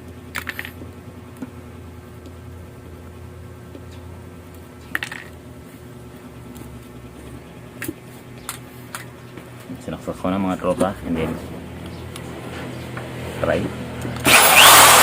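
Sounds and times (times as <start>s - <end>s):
steady low hum: 0.0s - 14.2s.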